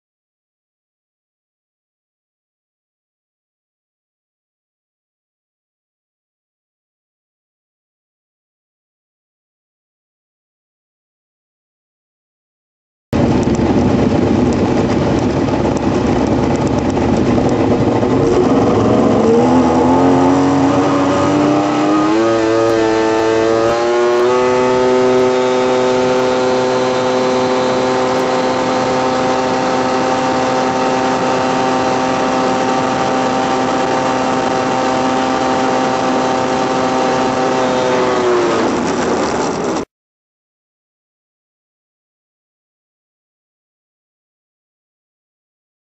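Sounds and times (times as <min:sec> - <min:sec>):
jet ski engine at full throttle: 0:13.2 - 0:39.9.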